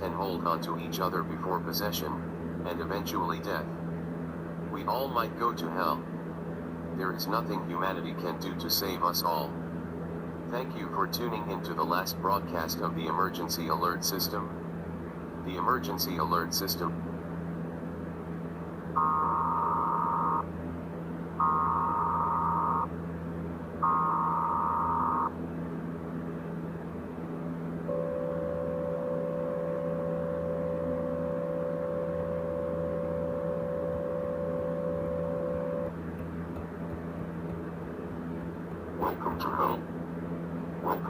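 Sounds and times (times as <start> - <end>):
low hum: 0.0 - 41.0
two-tone attention signal: 19.0 - 20.5, 21.4 - 22.9, 23.8 - 25.3, 27.9 - 35.9.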